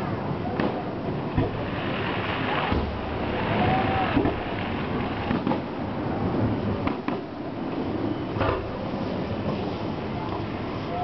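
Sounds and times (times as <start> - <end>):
fireworks booms and cracks: 0.5 - 7.3.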